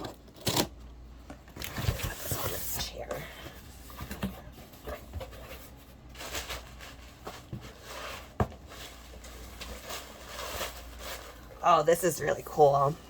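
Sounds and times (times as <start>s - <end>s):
air conditioner humming: 0.0s - 13.0s
cardboard package rustling: 3.8s - 11.9s.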